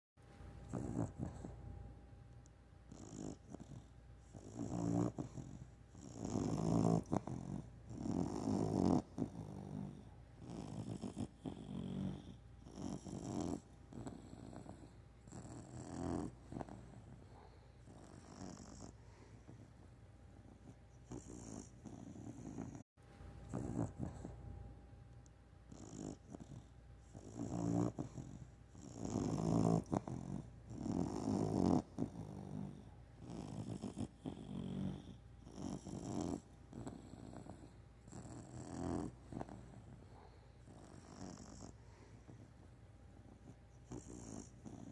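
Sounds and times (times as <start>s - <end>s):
person snoring: 4.4s - 16.8s, 27.2s - 39.6s.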